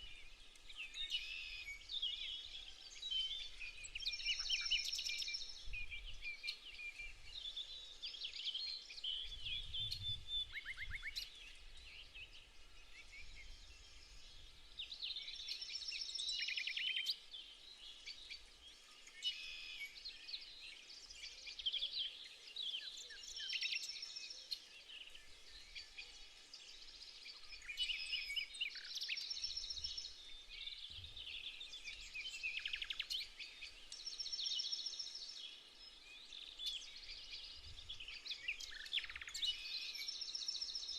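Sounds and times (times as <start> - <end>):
songbirds singing: 0.0 - 40.9.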